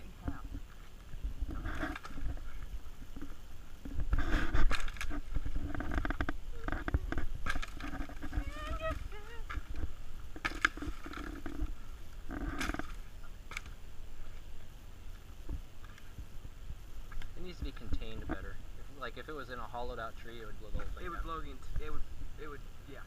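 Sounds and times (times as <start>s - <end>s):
steady low rumble: 0.0s - 23.0s
indistinct voices: 5.6s - 13.4s.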